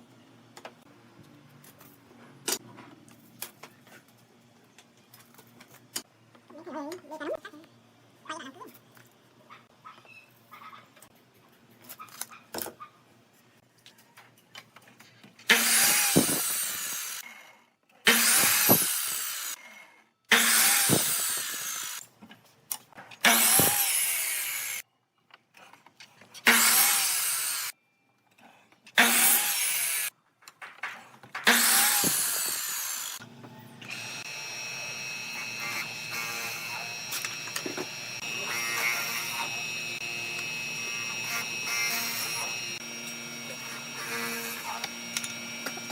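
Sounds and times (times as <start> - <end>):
power tool working wood: 15.5 - 17.2, 18.1 - 19.6, 20.3 - 22.0, 23.2 - 24.8, 26.4 - 27.8, 29.0 - 30.1, 31.4 - 45.9.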